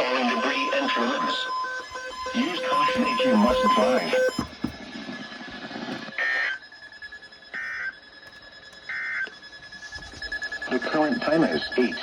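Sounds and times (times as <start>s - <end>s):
short electronic beeps: 0.0s - 4.7s
faint steady high tone: 0.0s - 12.0s.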